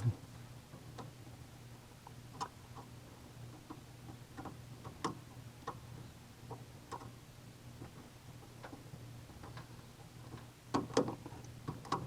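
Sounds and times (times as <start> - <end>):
low steady hum: 0.0 - 11.7
light ticks and clicks: 6.4 - 7.2.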